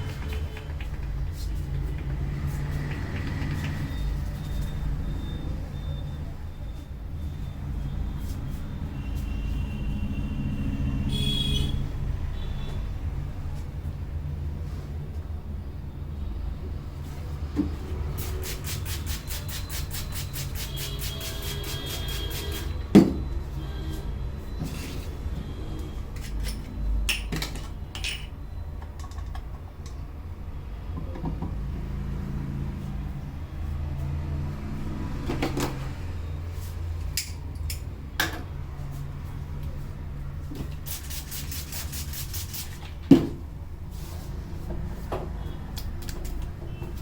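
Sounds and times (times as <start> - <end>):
hand slaps and taps on head: 0.0 - 2.1.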